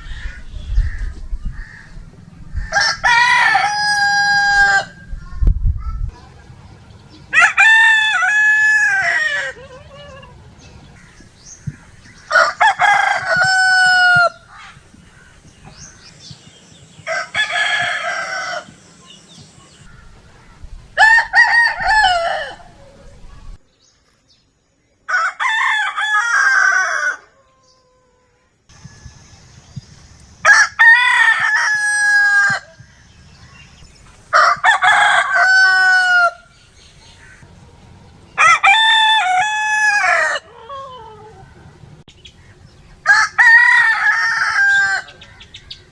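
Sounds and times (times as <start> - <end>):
rooster crowing: 2.6 - 5.0, 7.4 - 10.4, 12.2 - 14.7, 17.1 - 18.7, 21.0 - 23.3, 25.1 - 29.2, 30.4 - 32.8, 34.3 - 36.6, 38.4 - 41.7, 43.0 - 45.5.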